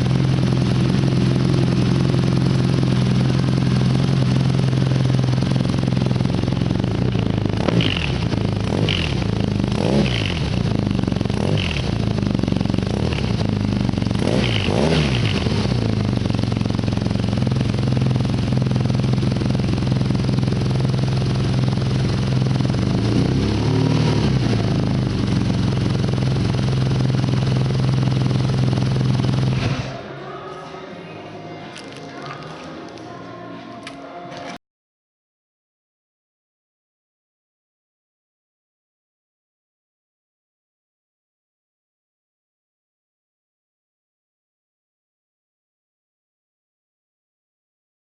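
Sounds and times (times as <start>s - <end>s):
motorcycle engine idling: 0.0s - 30.0s.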